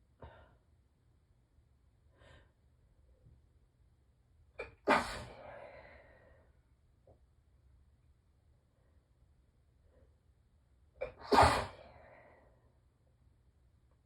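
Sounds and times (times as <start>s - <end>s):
woman sneezing: 4.6s - 5.4s, 11.0s - 11.8s
woman breathing in: 5.3s - 6.6s.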